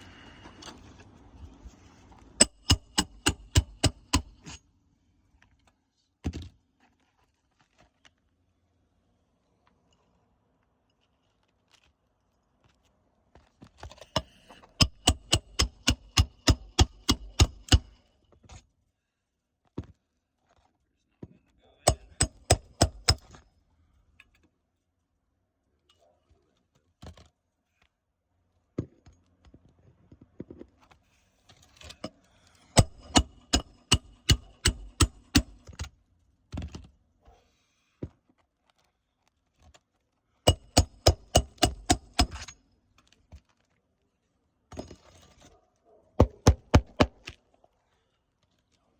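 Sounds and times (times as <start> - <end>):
hammer blows on metal: 21.9 - 23.2, 32.8 - 35.6.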